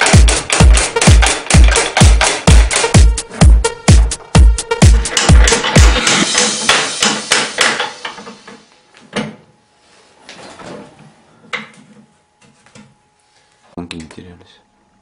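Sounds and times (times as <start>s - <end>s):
electronic dance music kick drum: 0.0s - 8.0s.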